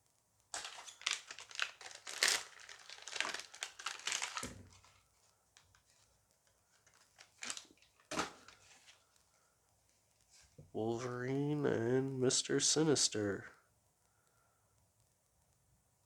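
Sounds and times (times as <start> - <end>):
wrapper tearing and crinkling: 0.5 - 5.0, 6.8 - 8.6
wrapper rustling: 0.5 - 9.2.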